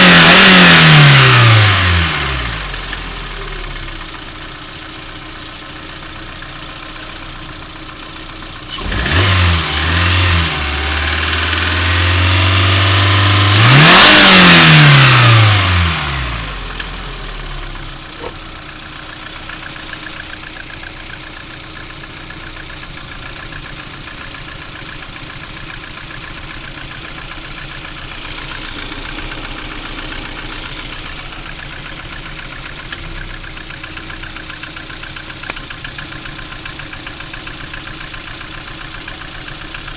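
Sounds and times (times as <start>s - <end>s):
car engine idling and revving: 0.0s - 39.9s
engine knock: 17.7s - 39.9s.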